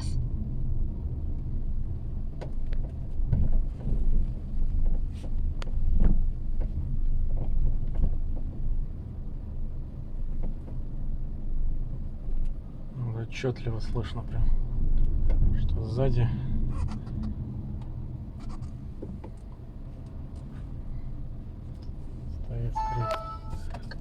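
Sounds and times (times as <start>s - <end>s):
car road noise: 0.0s - 13.1s, 13.7s - 24.0s
seat rattling and knocking: 2.4s - 8.7s.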